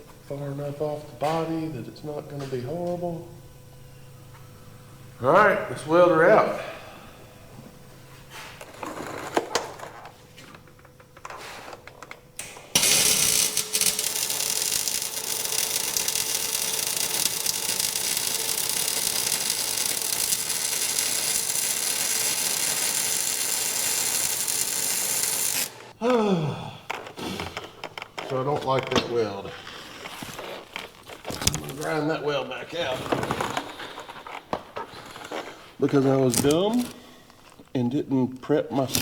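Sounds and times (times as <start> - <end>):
welder hissing: 12.7 - 26.0.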